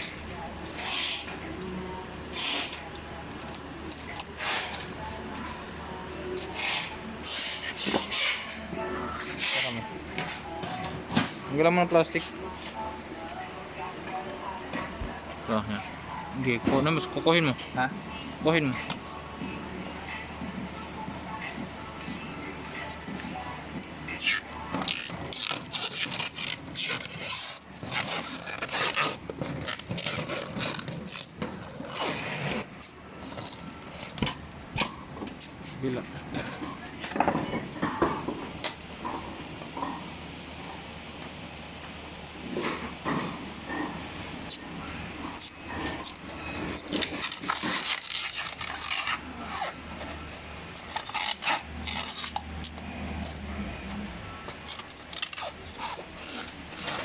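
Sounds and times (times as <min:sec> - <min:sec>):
rubbing and scraping parts: 0:23.8 - 0:38.4, 0:45.2 - 0:57.0.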